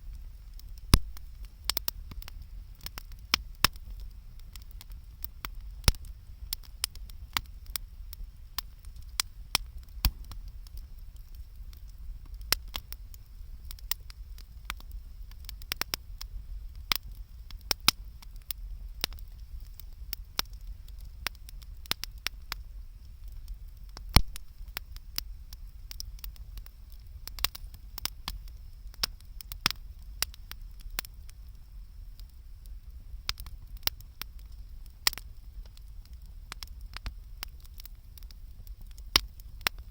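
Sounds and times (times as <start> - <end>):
low steady rumble: 0.0 - 36.6
campfire crackling and popping: 0.0 - 39.9
loud snap of burning wood: 0.0 - 39.9.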